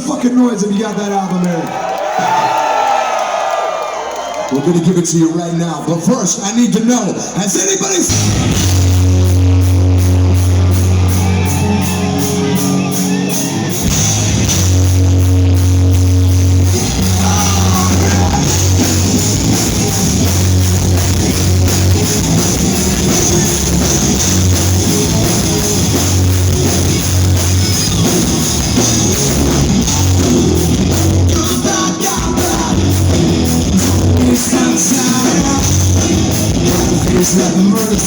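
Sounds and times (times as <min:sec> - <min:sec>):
rock band playing: 0:08.0 - 0:38.0.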